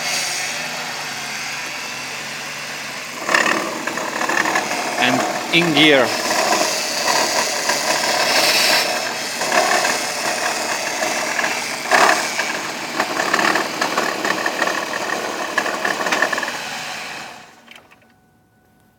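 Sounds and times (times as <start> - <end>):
car engine running: 2.9 - 17.9
grunting rattly noise: 3.2 - 16.7.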